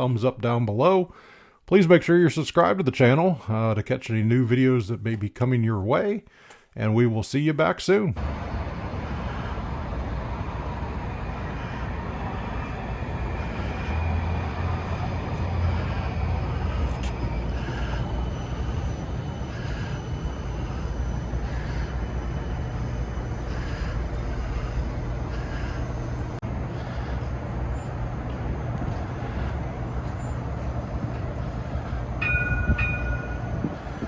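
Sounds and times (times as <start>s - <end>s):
streetcar rumbling on rails: 8.2s - 34.0s.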